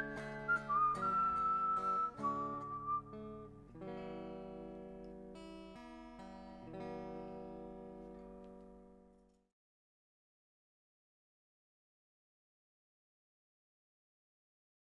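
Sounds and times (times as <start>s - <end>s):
whistled melody: 0.0s - 3.5s
acoustic guitar strumming: 0.0s - 9.2s.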